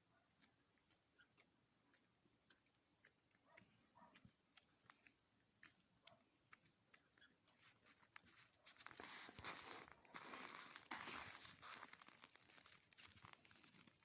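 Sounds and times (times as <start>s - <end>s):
snow crunching and creaking: 8.3s - 14.0s.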